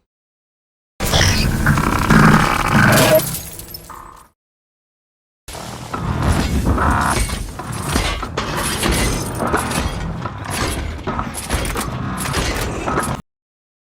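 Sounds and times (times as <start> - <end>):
robot servo grinding: 1.0 - 3.4
high-pitched grinding tone: 1.0 - 3.5.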